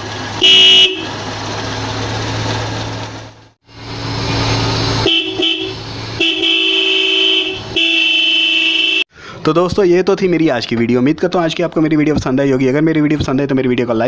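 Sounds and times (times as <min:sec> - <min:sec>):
pressure horns honking: 0:00.0 - 0:02.1, 0:03.8 - 0:09.1.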